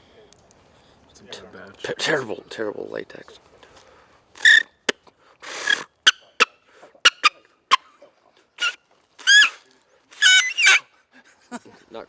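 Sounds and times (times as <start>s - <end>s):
turkey call clucks and yelps: 8.6s - 9.6s, 10.2s - 10.8s.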